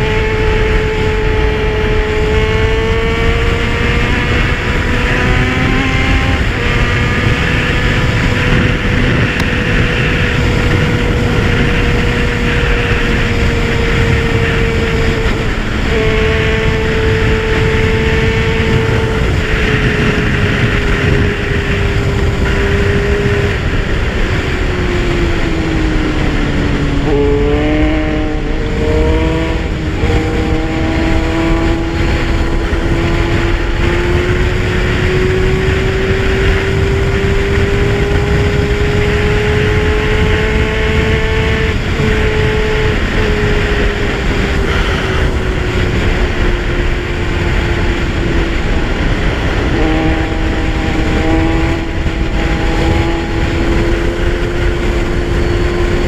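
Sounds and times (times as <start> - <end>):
motorcycle engine under way: 0.0 - 56.0
wind rumble on microphone: 0.0 - 56.0.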